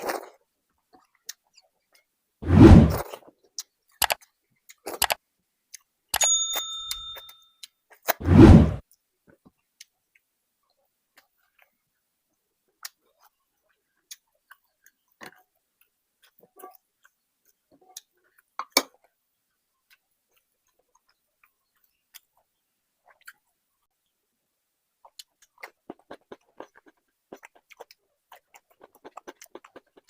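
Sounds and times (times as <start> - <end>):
wet chewing smacks: 25.0 - 30.0.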